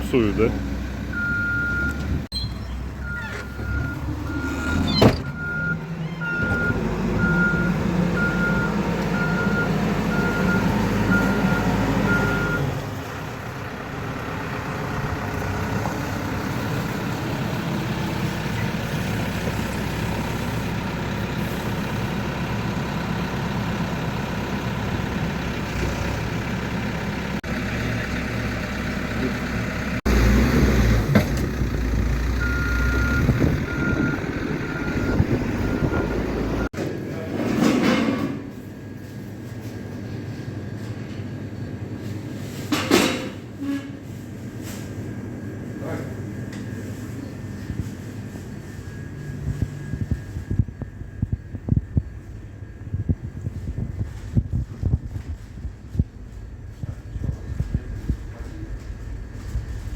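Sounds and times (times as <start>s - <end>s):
vehicle engine running: 0.0s - 36.8s, 46.8s - 59.9s
reversing alarm beeping: 1.1s - 12.7s, 32.4s - 36.7s
steady rumbling noise: 49.3s - 59.9s.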